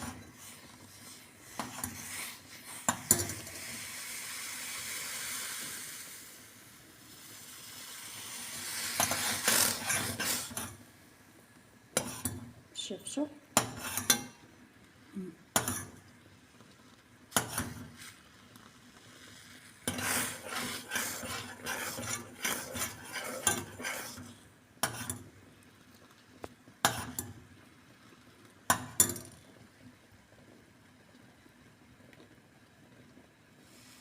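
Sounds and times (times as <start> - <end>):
metal spoon stirring in a pot: 0.0 - 3.6, 9.0 - 10.8, 12.0 - 12.5, 13.6 - 14.4, 15.6 - 16.0, 17.4 - 18.2, 19.7 - 25.3, 26.8 - 27.4.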